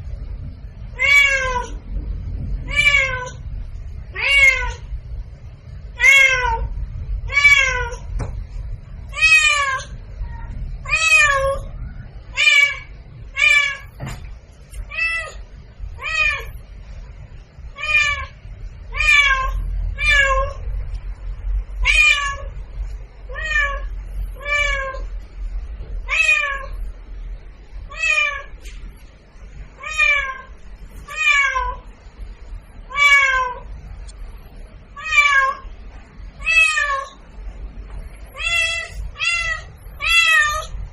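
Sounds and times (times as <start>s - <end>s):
low steady hum: 0.0s - 40.9s
cat meowing: 0.9s - 1.8s, 2.7s - 3.4s, 4.1s - 4.9s, 6.0s - 8.1s, 9.1s - 11.7s, 12.3s - 14.0s, 14.9s - 15.4s, 16.0s - 16.6s, 17.8s - 20.6s, 21.8s - 22.5s, 23.3s - 25.1s, 26.1s - 26.8s, 27.9s - 28.6s, 29.8s - 31.9s, 32.9s - 33.7s, 35.0s - 35.7s, 36.4s - 37.2s, 38.3s - 40.8s.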